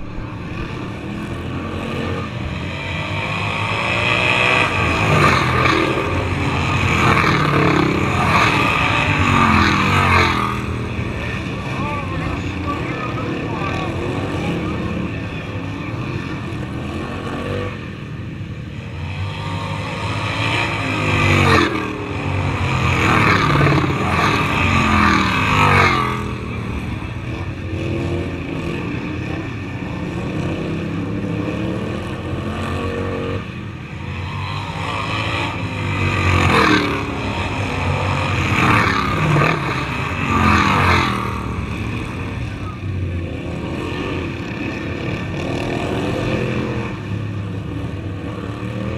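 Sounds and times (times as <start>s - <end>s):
racing lawn mower engines: 0.0s - 48.9s.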